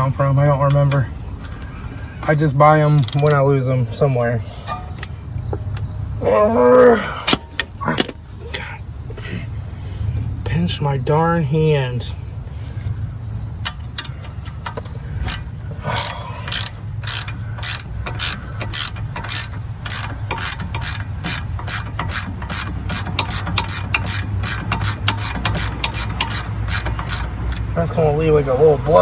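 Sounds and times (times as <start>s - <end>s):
hand ratchet clicking: 0.7s - 3.6s, 13.6s - 27.7s.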